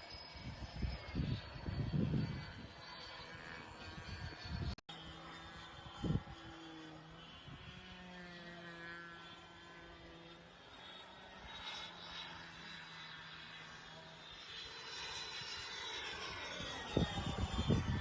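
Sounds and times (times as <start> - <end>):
electric ducted-fan motors whining: 0.0 - 18.0.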